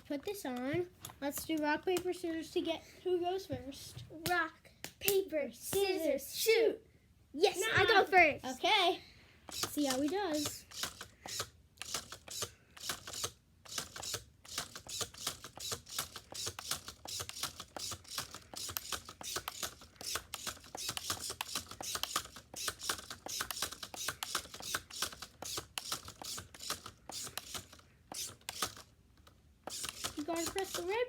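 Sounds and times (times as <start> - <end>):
toy clicking rapidly: 9.5 - 28.9, 29.6 - 31.0.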